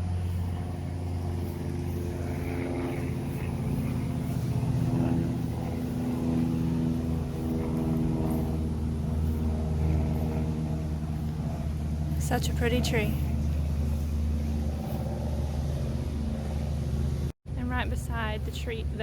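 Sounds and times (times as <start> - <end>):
engine humming: 0.0 - 19.0.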